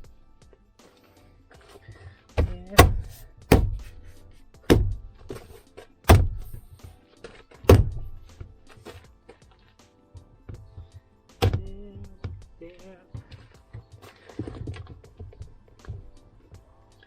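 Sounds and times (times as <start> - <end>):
background music: 0.0 - 17.0
heavy thumps on door panel: 2.4 - 5.5, 6.1 - 6.7, 7.7 - 8.3, 11.4 - 11.9.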